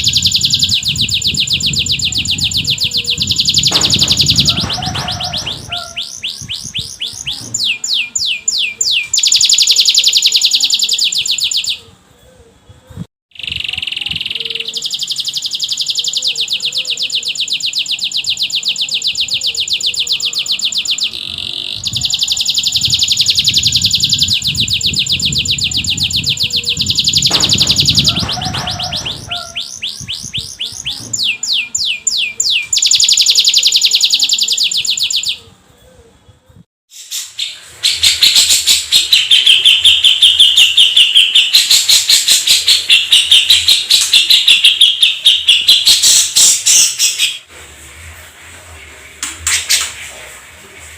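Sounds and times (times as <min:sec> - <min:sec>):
canary singing fast trills: 0:00.0 - 0:11.9, 0:13.3 - 0:35.4.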